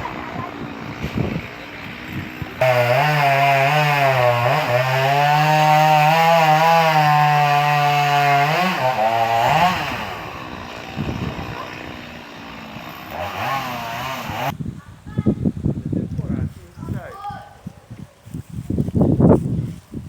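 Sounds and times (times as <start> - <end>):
chainsaw revving and cutting wood: 0.0 - 14.6.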